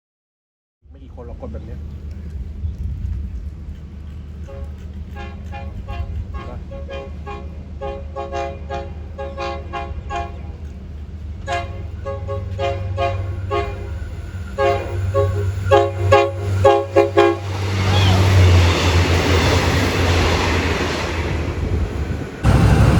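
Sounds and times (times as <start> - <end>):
steady low hum: 0.9 - 17.7
locomotive air horn toots: 4.4 - 21.0.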